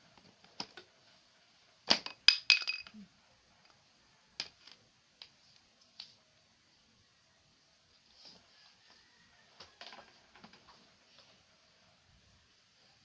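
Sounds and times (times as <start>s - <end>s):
small hard objects clinking: 1.9s - 3.0s.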